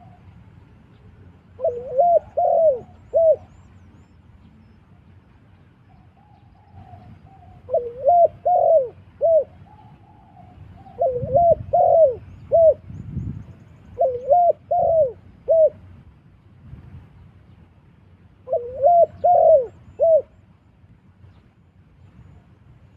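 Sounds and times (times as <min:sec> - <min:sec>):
dove cooing: 0:00.0 - 0:00.3, 0:01.5 - 0:03.6, 0:05.9 - 0:12.9, 0:13.9 - 0:15.9, 0:18.4 - 0:20.4.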